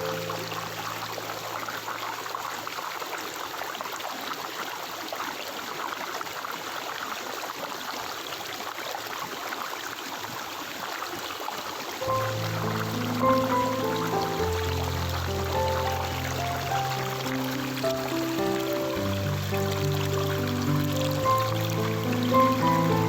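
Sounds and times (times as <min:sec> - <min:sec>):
soft music with sustained tones: 0:00.0 - 0:02.1, 0:12.0 - 0:23.0
stream water babbling: 0:00.0 - 0:23.0.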